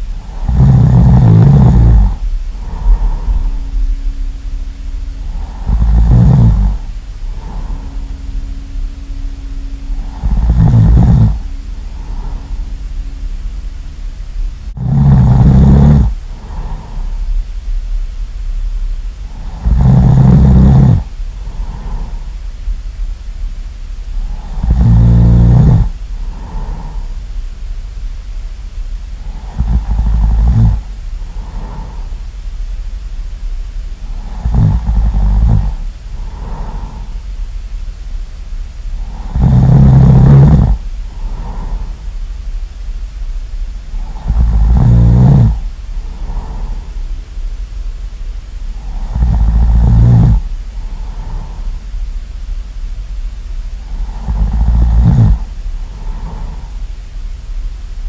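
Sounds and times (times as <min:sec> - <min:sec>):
loud deep snoring: 0:00.0 - 0:03.9, 0:05.2 - 0:08.2, 0:09.9 - 0:12.8, 0:14.7 - 0:17.3, 0:19.2 - 0:22.3, 0:24.1 - 0:27.2, 0:29.2 - 0:32.2, 0:34.0 - 0:37.2, 0:38.9 - 0:42.0, 0:43.9 - 0:47.0, 0:48.7 - 0:51.8, 0:53.8 - 0:56.8
quiet breathing: 0:00.0 - 0:58.0.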